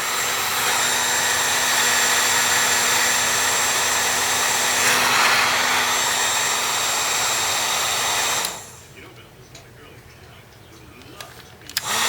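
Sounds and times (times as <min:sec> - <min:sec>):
heat gun blowing air: 0:00.0 - 0:08.9, 0:11.8 - 0:12.0.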